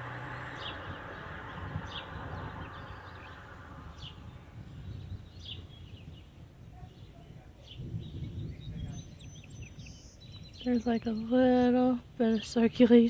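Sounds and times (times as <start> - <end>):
high bird chirps: 0.0 - 6.4, 7.8 - 11.4
low rumbling wind: 0.0 - 13.0.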